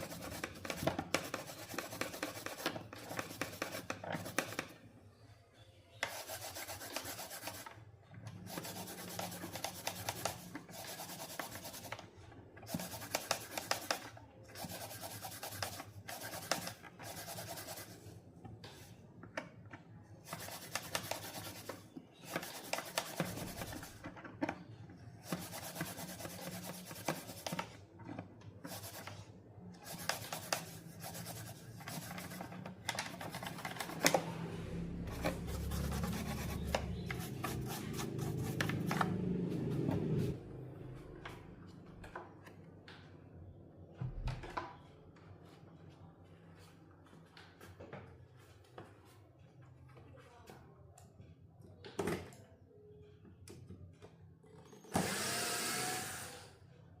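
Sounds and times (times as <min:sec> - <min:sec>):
scraping and rubbing on speaker: 0:34.8 - 0:40.4.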